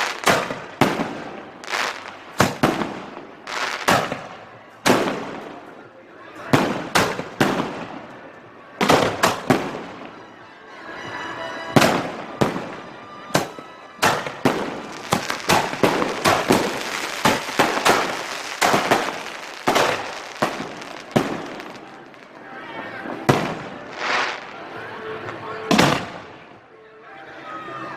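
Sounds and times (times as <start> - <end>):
fireworks bangs and pops: 0.0 - 5.8, 6.5 - 8.2, 8.8 - 10.2, 13.4 - 22.4, 23.2 - 24.6, 25.7 - 26.4.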